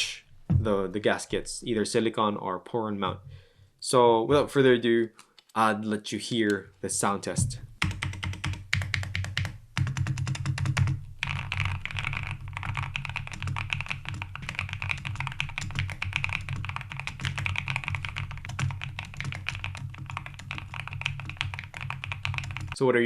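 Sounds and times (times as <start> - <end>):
mechanical keyboard typing: 7.8 - 22.8.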